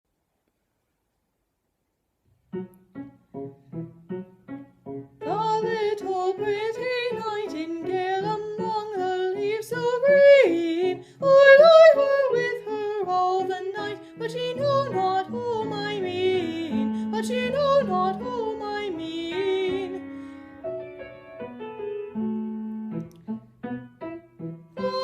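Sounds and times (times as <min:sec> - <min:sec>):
piano accompaniment: 0:02.4 - 0:25.0
woman singing classical: 0:05.2 - 0:20.3, 0:24.7 - 0:25.0.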